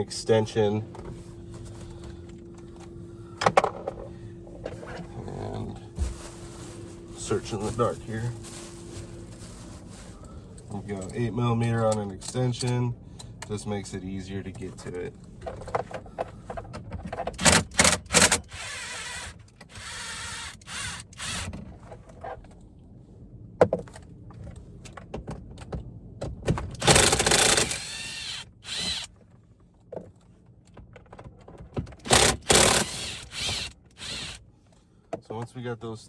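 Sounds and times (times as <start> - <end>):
power tool turning screws: 17.4 - 21.6, 26.8 - 29.1, 32.0 - 34.4.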